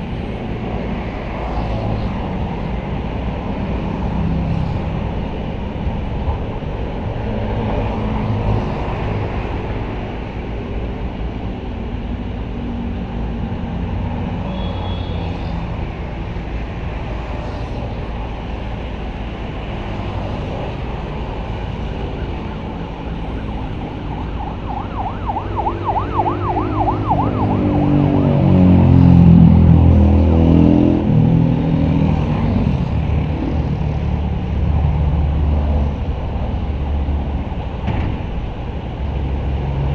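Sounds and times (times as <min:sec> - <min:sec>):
warbling siren: 0:20.4 - 0:30.5.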